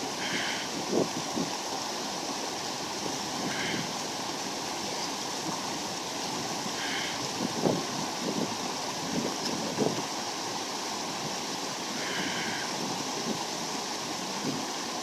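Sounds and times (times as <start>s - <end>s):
creek rushing: 0.0s - 15.0s
man breathing heavily: 0.1s - 0.8s, 6.8s - 7.3s, 11.9s - 12.8s.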